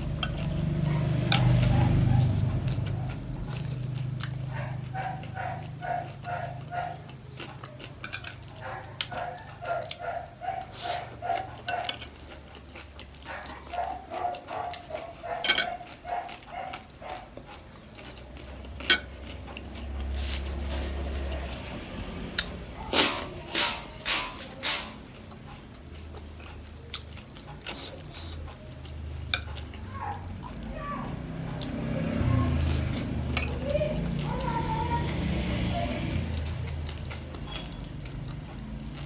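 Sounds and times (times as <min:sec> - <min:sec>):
rhythmic chewing: 0:00.0 - 0:39.0
spoon clicking on dish: 0:15.4 - 0:15.8.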